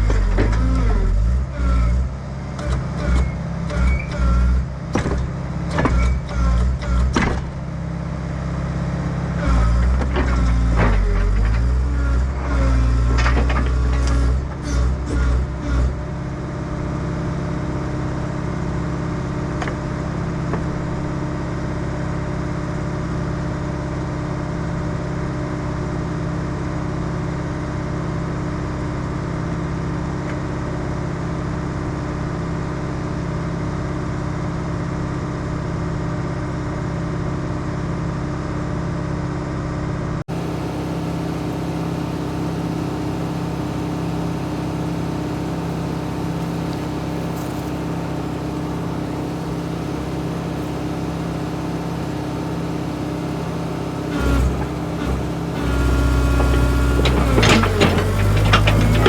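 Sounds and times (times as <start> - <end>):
excavator diesel engine running: 0.0 - 26.0, 40.3 - 59.0.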